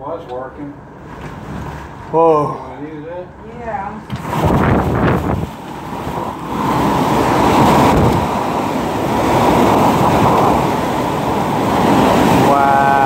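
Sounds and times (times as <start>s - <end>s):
wind buffeting microphone: 4.0s - 13.0s
strong wind rushing: 4.2s - 13.0s.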